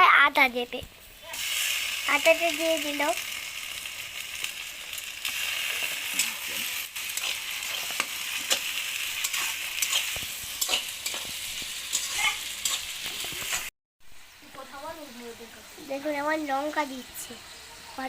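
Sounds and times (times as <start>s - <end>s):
food sizzling in hot oil: 0.0s - 18.0s
utensil scraping a pan: 5.8s - 13.7s.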